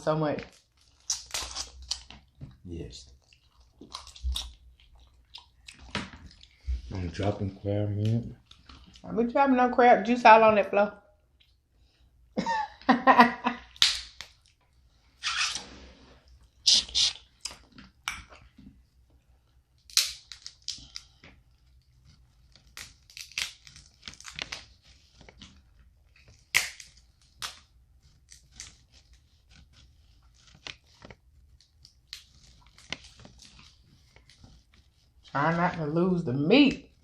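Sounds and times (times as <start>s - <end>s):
crab shells cracking: 0.9s - 2.3s, 19.8s - 21.2s, 22.6s - 24.6s, 26.2s - 27.7s.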